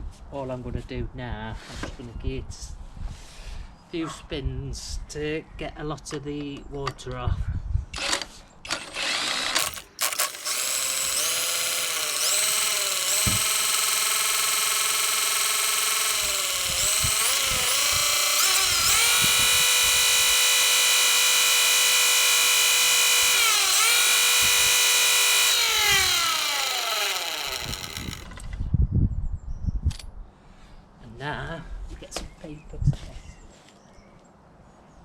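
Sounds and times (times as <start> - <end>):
electric motor whine spinning reel: 9.4 - 28.4.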